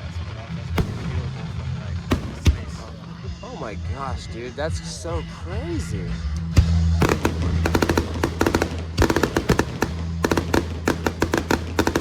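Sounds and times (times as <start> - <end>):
music with low bass: 0.0 - 12.0
fireworks bangs and crackles: 0.7 - 3.0, 6.6 - 12.0.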